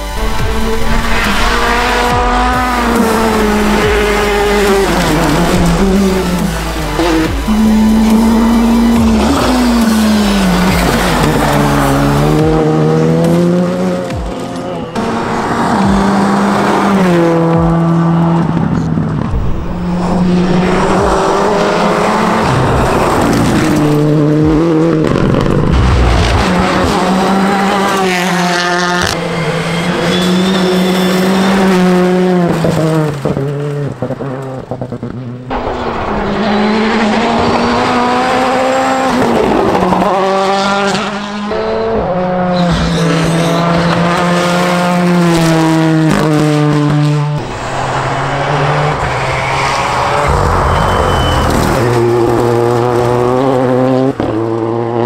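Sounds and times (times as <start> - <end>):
rally car engines revving: 0.0 - 55.0
tyre squeal: 29.1 - 31.8, 41.7 - 44.2, 49.0 - 52.2.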